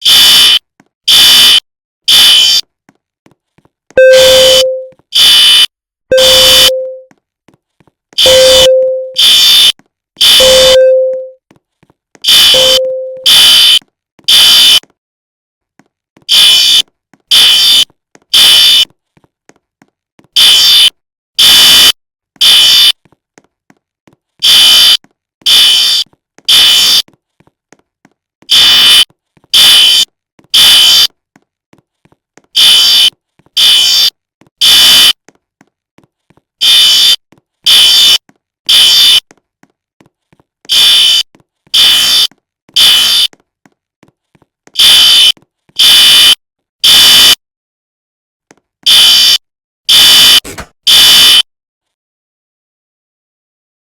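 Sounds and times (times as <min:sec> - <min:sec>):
fire alarm beeping: 0:00.0 - 0:02.6, 0:04.0 - 0:07.1, 0:08.2 - 0:11.4, 0:12.3 - 0:14.8, 0:16.3 - 0:18.8, 0:20.4 - 0:23.0, 0:24.4 - 0:27.0, 0:28.5 - 0:30.0, 0:30.6 - 0:31.1, 0:32.6 - 0:35.2, 0:36.6 - 0:39.2, 0:40.7 - 0:43.3, 0:44.8 - 0:47.4, 0:48.9 - 0:51.4.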